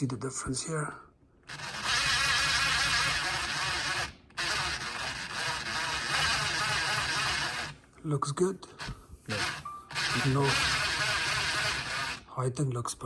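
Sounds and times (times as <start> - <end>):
power drill running: 1.5 - 7.8, 8.8 - 12.3.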